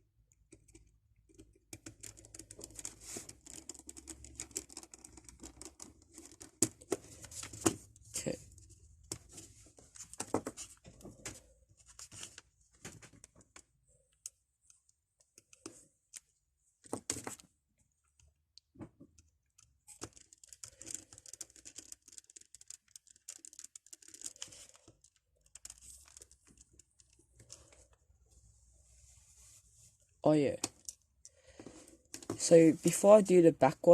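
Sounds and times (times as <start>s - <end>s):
plastic parts clicking: 19.0s - 27.9s.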